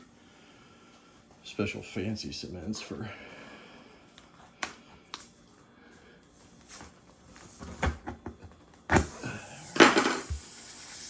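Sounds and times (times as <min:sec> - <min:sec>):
air hissing from tire: 0:08.9 - 0:11.0.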